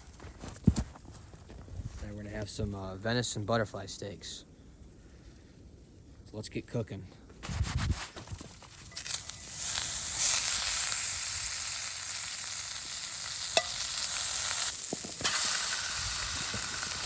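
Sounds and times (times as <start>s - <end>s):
food sizzling in a frying pan: 8.9s - 17.0s.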